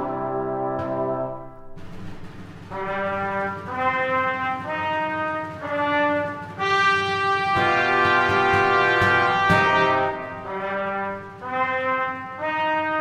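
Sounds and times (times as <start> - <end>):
brass ensemble funeral march: 0.0 - 13.0.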